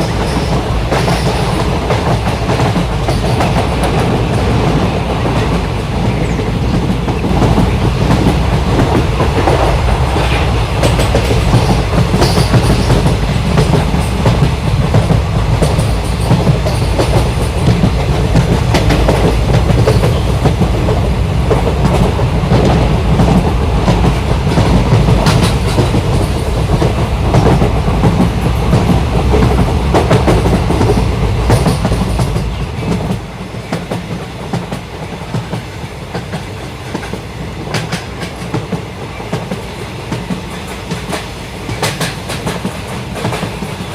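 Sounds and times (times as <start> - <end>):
train carriages rumbling: 0.0 - 43.9
wheels clacking over rail joints: 0.0 - 43.9.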